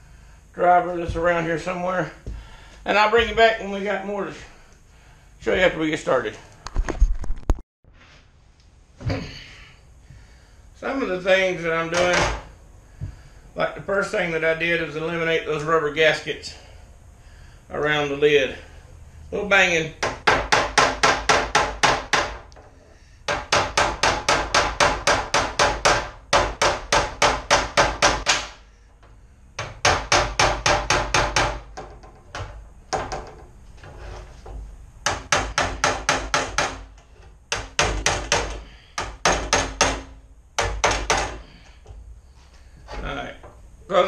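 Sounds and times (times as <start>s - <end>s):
hammer banging on sheet metal: 11.9s - 12.5s, 20.0s - 22.5s, 23.3s - 28.6s, 29.6s - 33.4s, 35.0s - 41.6s.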